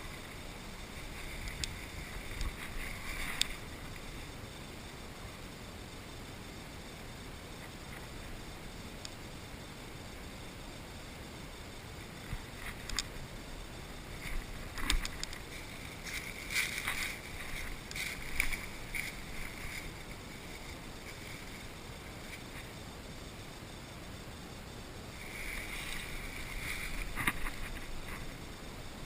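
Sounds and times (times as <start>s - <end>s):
rustling with clicks and scrapes: 0.0s - 4.2s, 12.2s - 13.2s, 14.1s - 22.8s, 25.2s - 28.5s
faint steady hiss: 0.0s - 29.0s.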